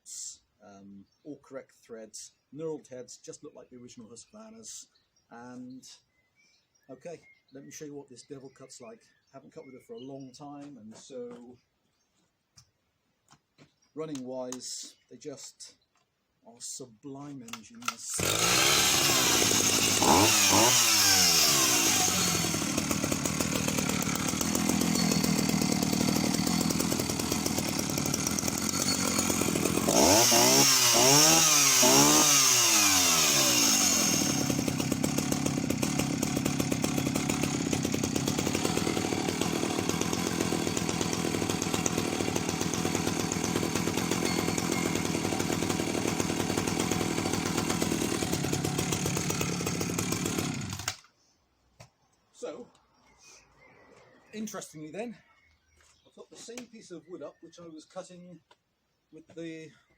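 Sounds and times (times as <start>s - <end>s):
chainsaw revving and idling: 17.8s - 51.1s.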